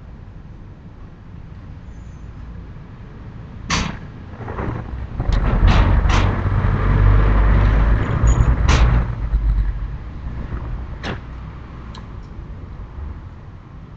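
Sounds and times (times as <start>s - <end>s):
sharp knocks: 3.7s - 11.4s
heavy low rumble: 4.1s - 13.4s.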